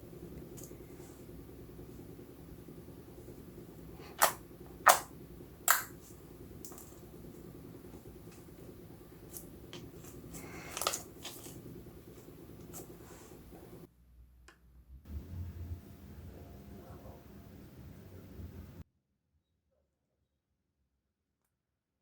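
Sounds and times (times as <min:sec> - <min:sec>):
low steady hum: 0:00.0 - 0:18.8
slime popping and clicking: 0:04.2 - 0:05.1, 0:05.7 - 0:05.9.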